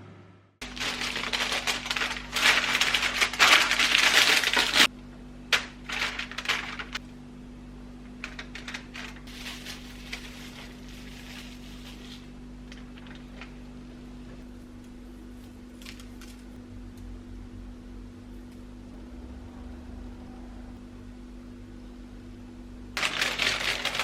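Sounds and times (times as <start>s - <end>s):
steady low hum: 0.0s - 24.0s
crinkling packaging rustle: 0.6s - 4.9s, 5.5s - 7.0s, 8.1s - 13.8s, 15.2s - 16.6s, 23.0s - 24.0s.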